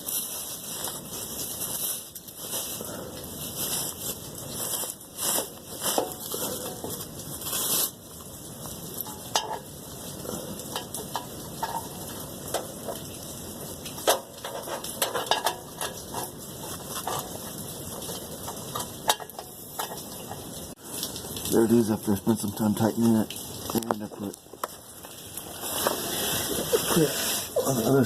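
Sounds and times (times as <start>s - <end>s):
steady hiss: 0.0s - 28.0s
hand tools clinking on metal: 9.0s - 9.7s, 14.0s - 17.4s.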